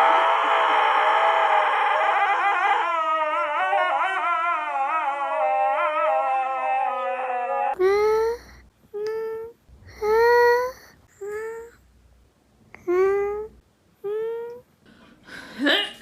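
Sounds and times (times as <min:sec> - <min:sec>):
dog howling: 0:00.0 - 0:07.8.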